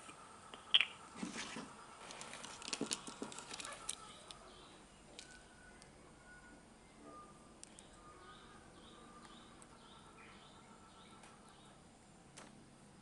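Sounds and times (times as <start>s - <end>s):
small clicks and rustles: 1.5s - 4.4s.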